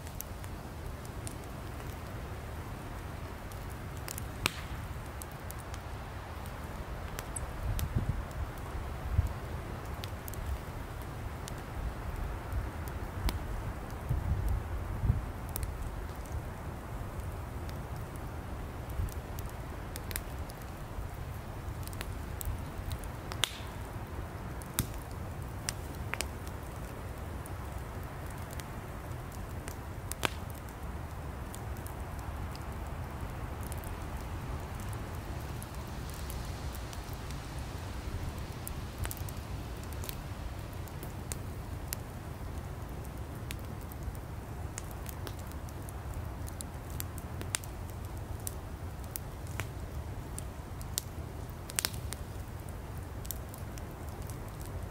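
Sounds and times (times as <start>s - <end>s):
fire rumble and hiss: 0.0s - 54.9s
firewood crackling and popping: 0.0s - 54.9s.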